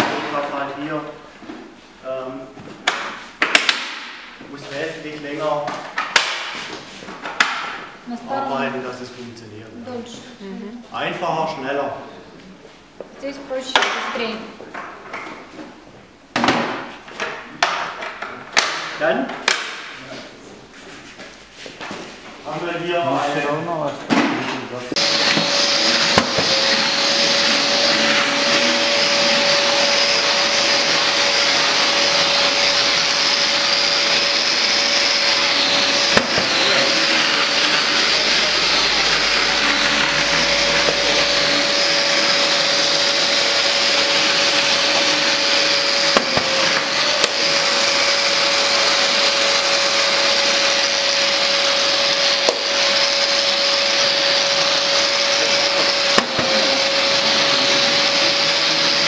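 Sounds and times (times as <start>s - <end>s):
dust extractor running: 25.0s - 59.0s.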